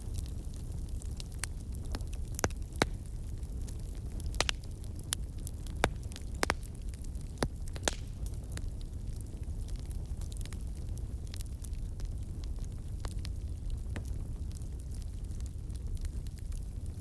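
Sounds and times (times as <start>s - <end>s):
firewood crackling and popping: 0.0s - 17.0s
low steady fire rumble: 0.0s - 17.0s.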